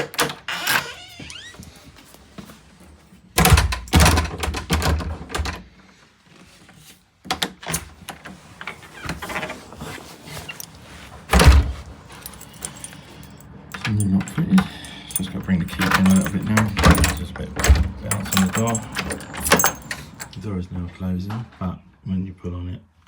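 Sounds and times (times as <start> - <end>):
door thudding shut: 11.3 - 11.9
metallic latch clicks: 13.8 - 20.4.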